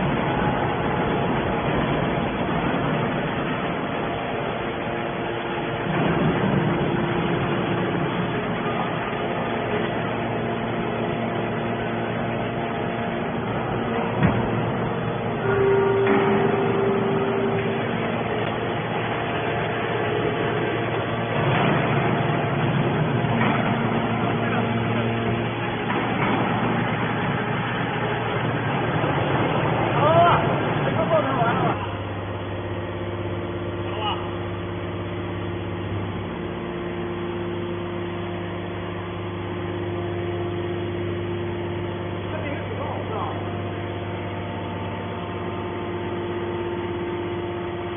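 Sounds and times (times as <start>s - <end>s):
steady tones: 0.0s - 33.8s
hydraulic power unit humming: 0.0s - 47.9s
scrap metal baler running: 0.0s - 47.9s.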